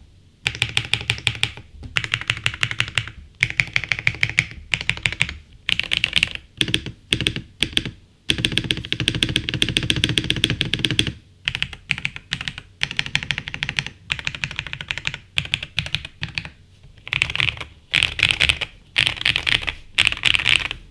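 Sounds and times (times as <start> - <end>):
typing on mechanical keyboard: 0.4 - 20.8.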